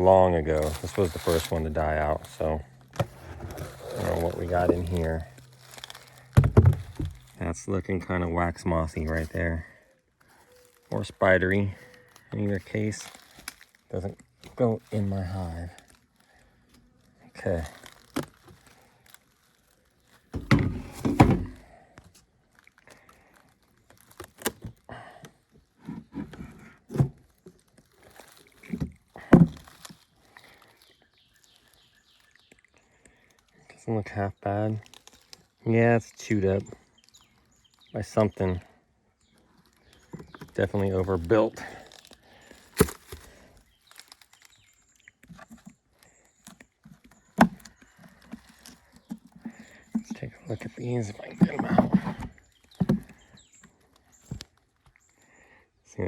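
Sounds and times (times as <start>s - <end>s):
scraping and rustling: 0.4s - 7.4s, 39.4s - 54.6s
knocks and thunks of wooden boxes: 6.3s - 7.3s, 20.4s - 21.6s, 28.8s - 29.7s, 51.2s - 53.2s.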